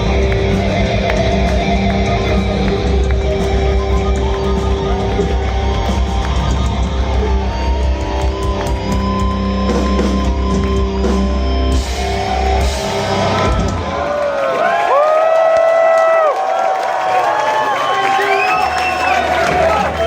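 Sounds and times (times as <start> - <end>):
live metal band playing: 0.0 - 14.6.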